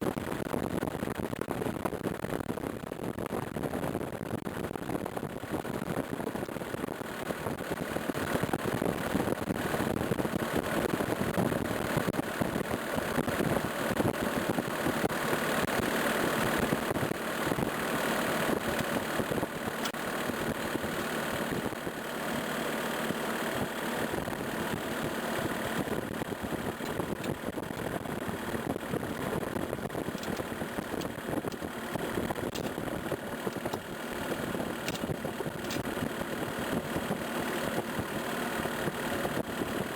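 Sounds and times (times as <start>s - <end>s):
loader engine running: 7.1s - 39.9s.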